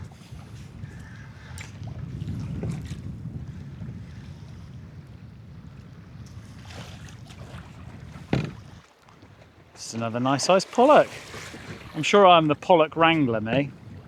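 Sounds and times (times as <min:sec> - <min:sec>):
water around boat hull: 0:00.0 - 0:14.0
wind buffeting microphone: 0:00.0 - 0:14.0
light knocks: 0:08.3 - 0:08.6.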